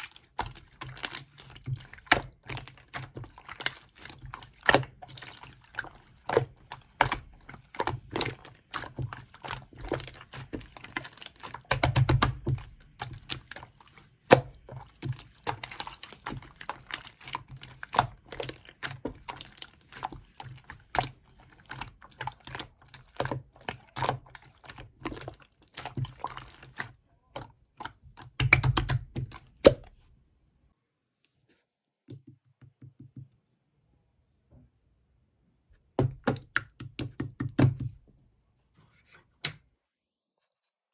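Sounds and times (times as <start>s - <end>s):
slime squished with wet clicks: 6.3s - 20.1s, 27.4s - 29.9s, 36.2s - 37.6s.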